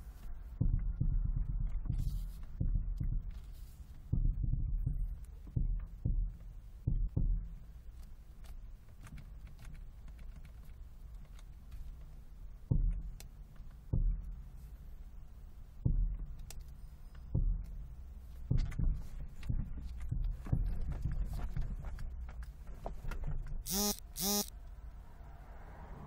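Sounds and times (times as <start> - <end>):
low steady rumble: 0.0 - 26.0
car suspension knocking: 18.4 - 23.6.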